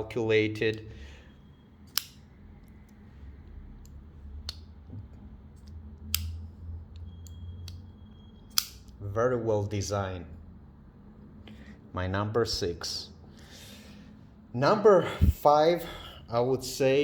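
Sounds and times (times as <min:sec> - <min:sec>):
folding knife blade clicking: 0:01.9 - 0:02.2, 0:08.5 - 0:09.0.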